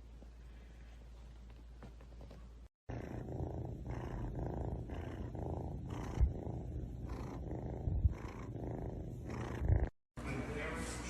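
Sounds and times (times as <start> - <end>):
cat purring: 2.9 - 10.0.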